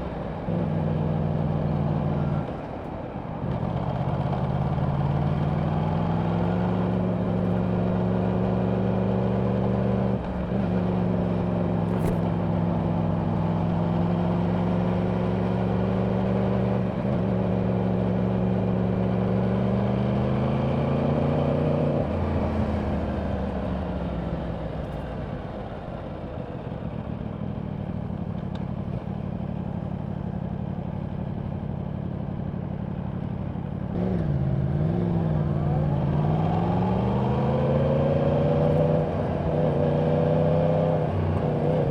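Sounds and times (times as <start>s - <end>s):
motorcycle engine revving: 5.6s - 24.7s, 33.8s - 41.9s.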